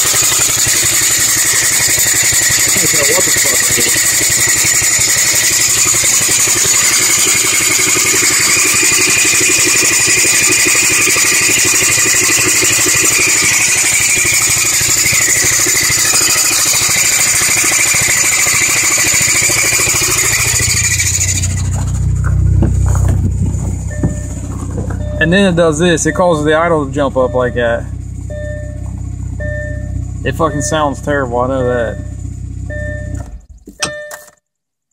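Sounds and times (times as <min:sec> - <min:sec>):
car engine idling: 0:00.0 - 0:34.3
metallic grinding and whine: 0:11.8 - 0:34.3.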